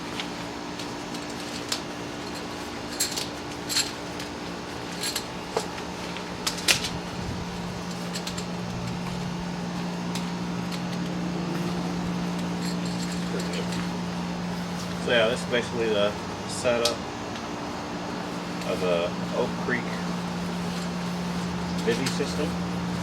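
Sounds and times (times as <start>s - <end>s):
low hum: 4.9s - 23.0s
camping gear clicks and clinks: 10.0s - 14.0s.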